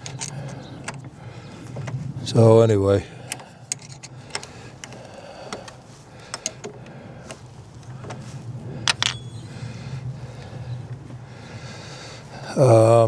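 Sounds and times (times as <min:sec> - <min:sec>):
hand tools clicking and tapping: 0:00.0 - 0:02.0, 0:03.3 - 0:08.2
steady low hum: 0:00.0 - 0:13.0.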